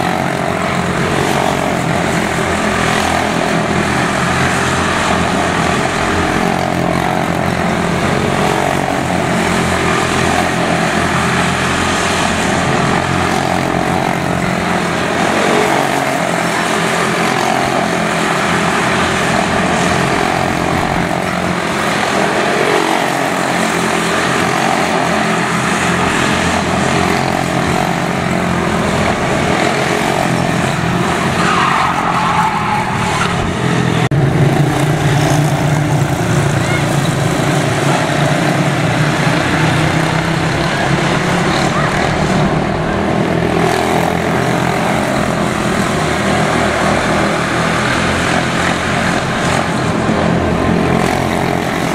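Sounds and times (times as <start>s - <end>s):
race car engines at speed: 0.0s - 51.9s.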